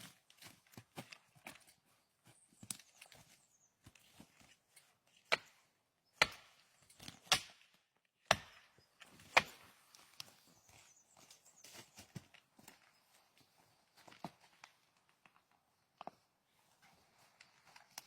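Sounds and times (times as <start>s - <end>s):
chopping wood: 5.2s - 5.6s, 6.2s - 9.7s.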